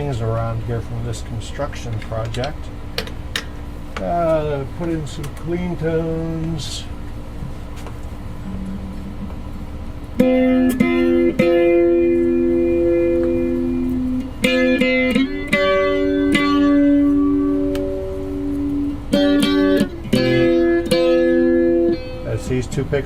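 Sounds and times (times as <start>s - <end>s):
clean electric guitar chords: 8.2s - 23.0s.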